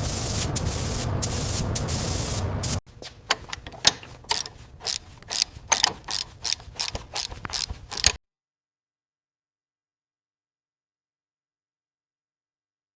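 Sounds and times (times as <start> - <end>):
spray hiss: 0.0 - 2.8
mechanical clicks and ratcheting: 3.3 - 8.2.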